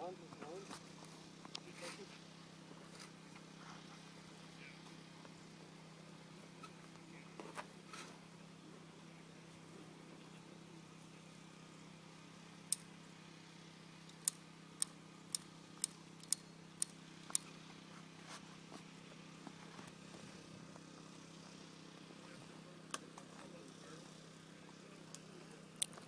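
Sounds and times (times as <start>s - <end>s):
steady low hum: 0.0s - 26.0s
sharp short clicks: 14.0s - 17.5s.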